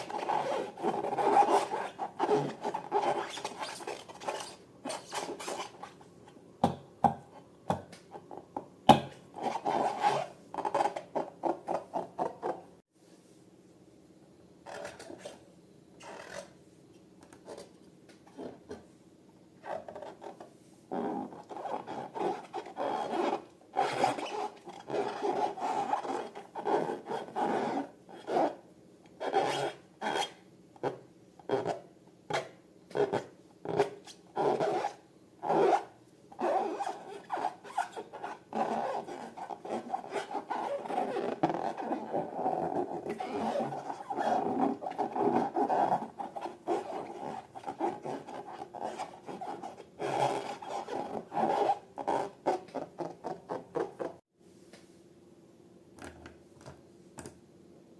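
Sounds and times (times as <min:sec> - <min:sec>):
balloons rubbed and squeezed: 0:00.0 - 0:06.0, 0:09.4 - 0:12.6, 0:19.6 - 0:28.6, 0:34.4 - 0:54.1.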